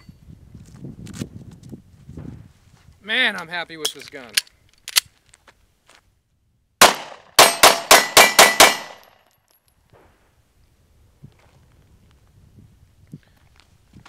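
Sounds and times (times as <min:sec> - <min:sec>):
pistol shots: 0:06.8 - 0:09.2.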